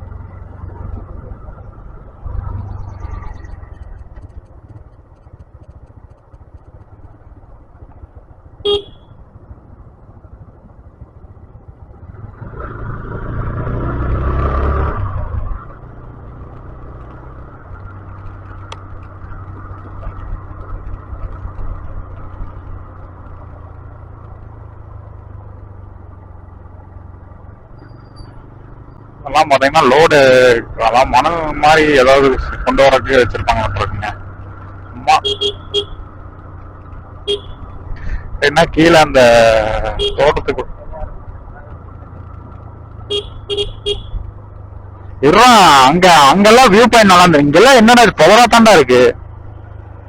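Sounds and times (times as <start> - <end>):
motorcycle engine running: 0.0 - 50.0
wind rumble: 0.0 - 50.0
horn toot: 8.6 - 9.1, 35.1 - 36.0, 37.2 - 37.7, 39.9 - 40.4, 43.1 - 44.2
vehicle noise with held horn tone: 8.6 - 9.2, 35.0 - 36.2, 37.2 - 37.8, 39.7 - 40.6, 43.0 - 44.4.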